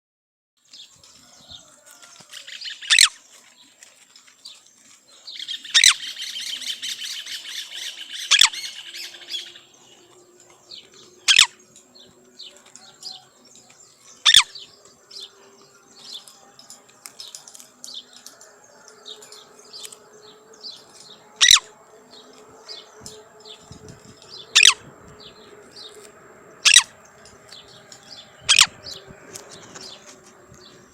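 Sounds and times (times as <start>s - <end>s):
bird chirping: 0.7s - 30.9s
bird warbling: 2.6s - 3.2s, 5.4s - 11.6s, 14.2s - 15.3s, 19.0s - 30.1s.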